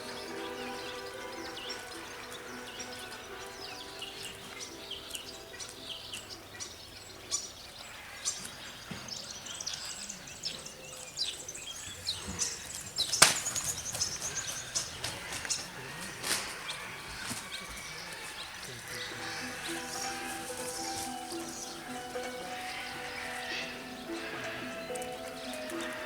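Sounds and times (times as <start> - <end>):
birds chirping: 0.0 - 26.0
loud sharp call or crack: 13.2 - 13.6.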